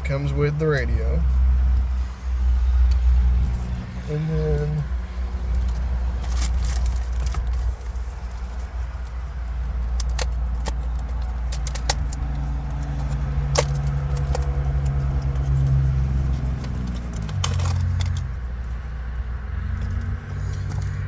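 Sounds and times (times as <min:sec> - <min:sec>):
low engine-like hum: 0:00.0 - 0:21.0
plastic connectors clicking and rattling: 0:05.3 - 0:18.8.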